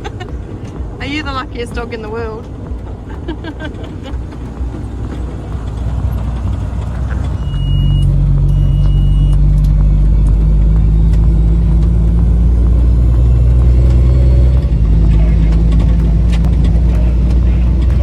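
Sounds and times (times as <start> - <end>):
vehicle engine running: 0.0 - 18.0
short high beeps: 7.3 - 9.4.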